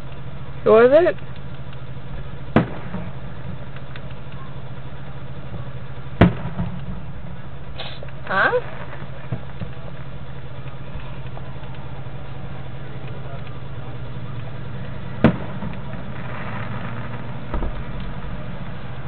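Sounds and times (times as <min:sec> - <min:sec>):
faint crackling: 0:00.0 - 0:19.0
steady low hum: 0:00.0 - 0:19.0
firework bang: 0:02.1 - 0:04.2, 0:05.4 - 0:09.8, 0:15.1 - 0:19.0
soft low thump: 0:17.5 - 0:18.2.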